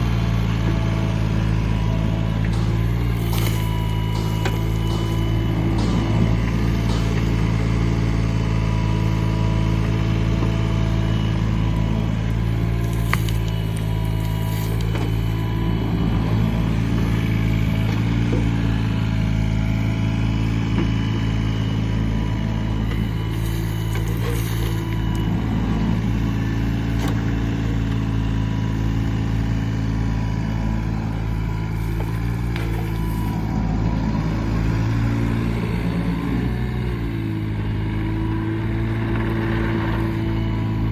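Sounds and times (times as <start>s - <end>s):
excavator diesel engine running: 0.0s - 40.9s
faint hydraulic whines: 0.0s - 40.9s
brief knocks: 2.5s - 9.0s.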